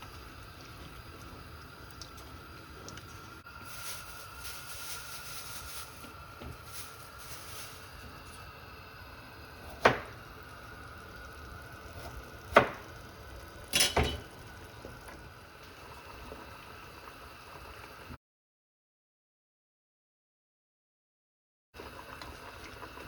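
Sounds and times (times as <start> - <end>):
simmering hiss: 0.0 - 18.0
utensil clinking against pot: 13.7 - 14.3.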